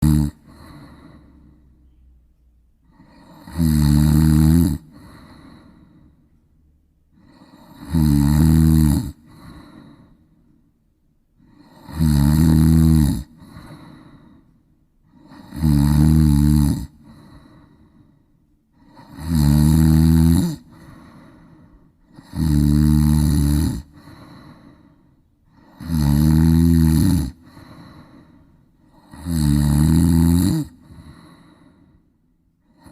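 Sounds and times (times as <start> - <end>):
cat snoring: 0.0 - 1.8, 2.8 - 6.1, 7.2 - 10.2, 11.4 - 14.4, 15.1 - 18.0, 18.8 - 24.8, 25.5 - 31.8, 32.6 - 32.9
cat breathing softly: 9.3 - 10.5, 13.4 - 15.4, 20.7 - 22.1, 24.0 - 25.8, 30.8 - 32.8.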